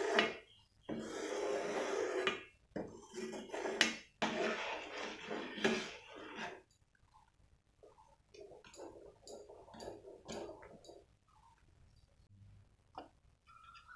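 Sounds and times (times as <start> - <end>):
utensils scraping cookware: 0.0 - 6.7, 8.4 - 11.0.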